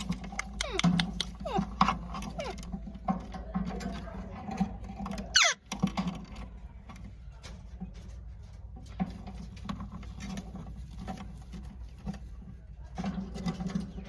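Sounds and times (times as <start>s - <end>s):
parrot squeaks: 0.0s - 2.6s, 5.3s - 5.6s
parrot screeching: 5.4s - 5.6s.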